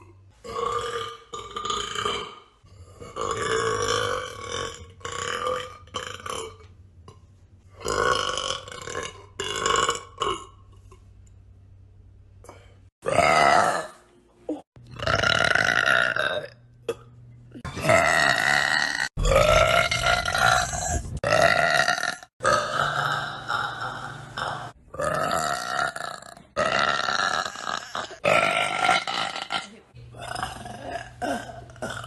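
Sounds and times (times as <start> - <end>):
woman belching loudly: 13.0 - 14.0, 14.9 - 32.0.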